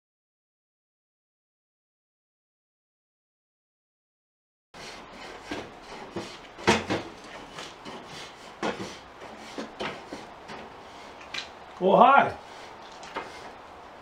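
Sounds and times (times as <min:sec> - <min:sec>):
knocks and clatters of handling: 0:05.2 - 0:11.5.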